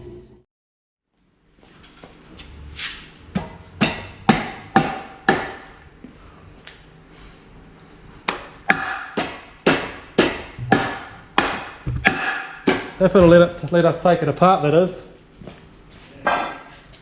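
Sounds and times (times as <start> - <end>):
hammer striking metal: 3.3 - 5.8, 8.3 - 13.6.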